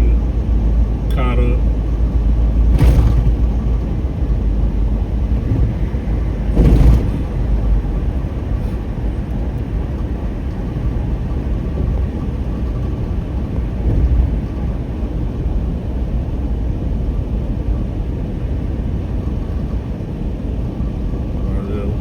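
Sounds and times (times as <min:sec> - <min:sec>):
car engine and tyre rumble: 0:00.0 - 0:22.0
short rush: 0:05.4 - 0:07.8.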